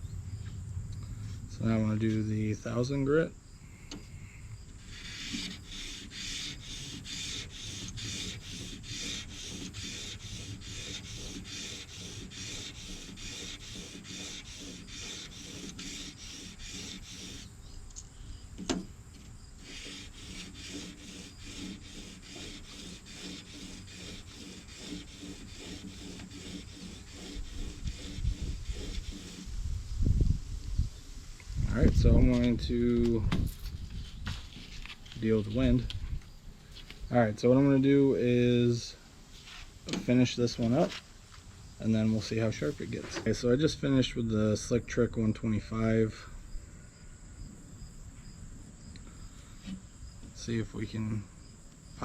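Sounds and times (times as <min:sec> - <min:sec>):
blade rubbing on sandpaper: 0:04.8 - 0:17.6, 0:19.6 - 0:29.8.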